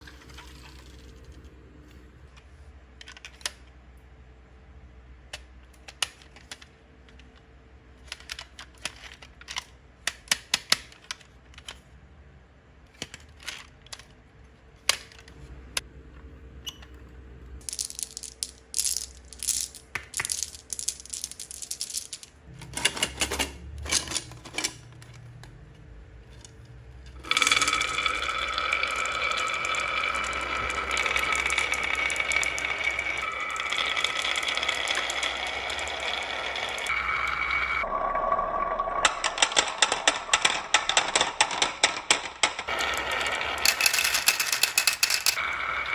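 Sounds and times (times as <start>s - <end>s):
marbles clattering down wooden run: 17.6s - 22.4s, 27.2s - 37.5s, 38.6s - 45.5s.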